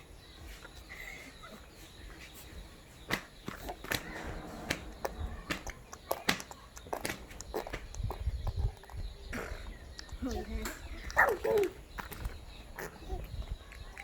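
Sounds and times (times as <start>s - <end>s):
sharp irregular clicks and knocks: 3.1s - 8.2s.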